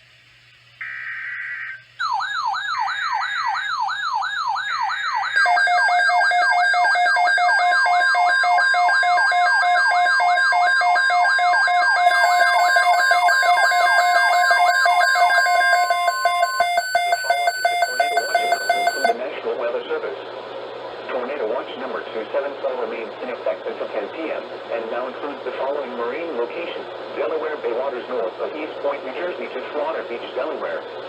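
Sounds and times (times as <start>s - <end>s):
siren sweeping up: 1.4s - 19.2s
pulsing electronic beeping: 11.4s - 19.2s
steady alert tone: 12.1s - 19.2s.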